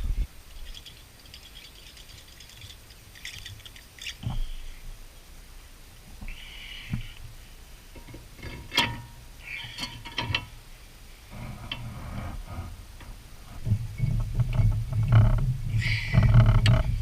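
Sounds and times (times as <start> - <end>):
low pulsing hum: 0.0 - 1.2, 10.4 - 17.0
tools and metal parts clinking: 8.0 - 10.5.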